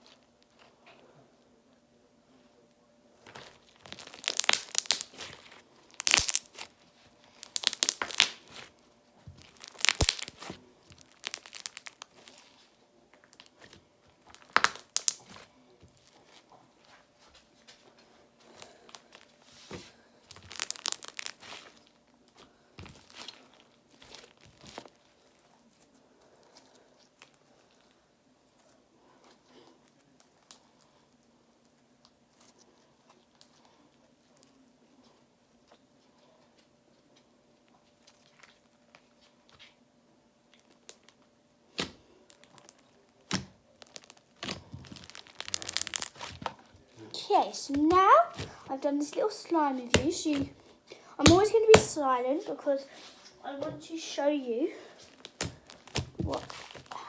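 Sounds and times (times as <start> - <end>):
slime squished by hand crackling: 3.2 - 8.8, 9.4 - 16.5, 18.5 - 26.0, 40.5 - 50.6, 51.2 - 52.1, 55.0 - 57.0.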